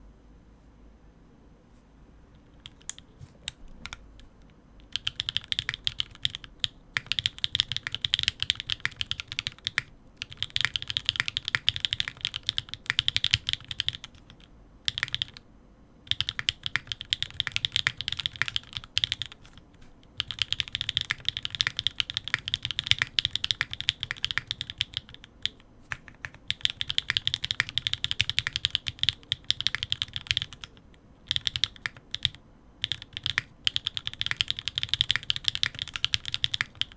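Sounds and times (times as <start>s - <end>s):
mechanical keyboard typing: 2.4s - 15.4s, 16.1s - 36.9s.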